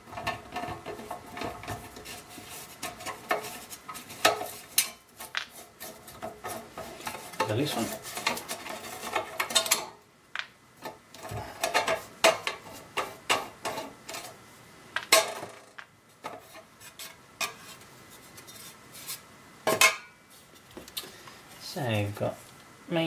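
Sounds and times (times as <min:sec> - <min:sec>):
hand tools clinking and scraping: 0:00.1 - 0:10.0, 0:10.8 - 0:14.4.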